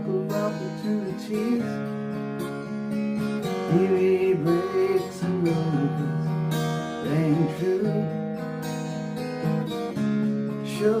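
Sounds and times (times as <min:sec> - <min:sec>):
man singing: 0:00.0 - 0:02.1, 0:03.4 - 0:08.3, 0:10.4 - 0:11.0
acoustic guitar strumming: 0:00.0 - 0:11.0.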